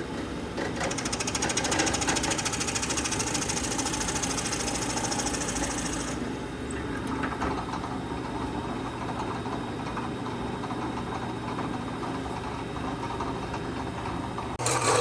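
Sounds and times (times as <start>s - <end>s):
small motor humming: 0.9s - 6.3s, 14.6s - 15.0s.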